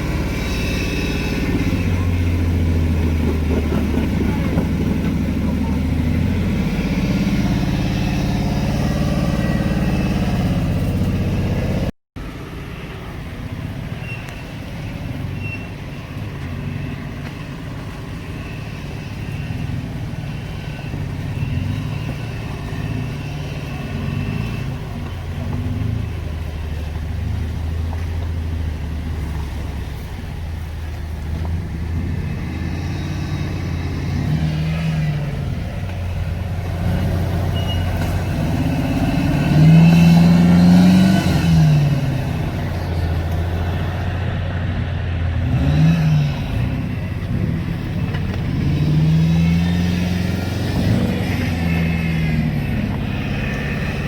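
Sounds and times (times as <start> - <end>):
vehicle engine running at low revs: 0.0 - 13.8.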